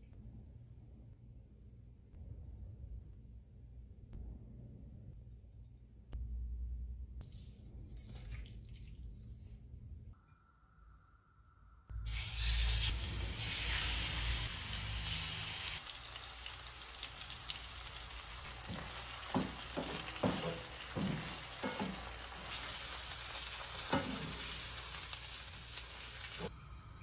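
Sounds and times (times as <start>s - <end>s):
food sizzling in a pan: 12.0s - 26.5s.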